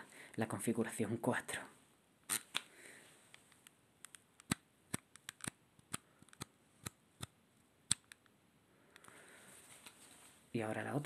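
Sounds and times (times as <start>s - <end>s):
headband adjuster clicking: 3.3s - 8.3s.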